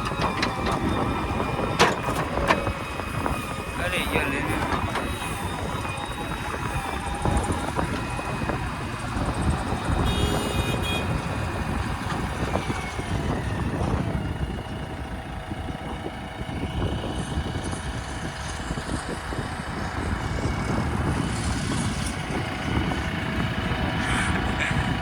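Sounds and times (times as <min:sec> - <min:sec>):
heavy diesel machinery running: 0:00.0 - 0:25.0.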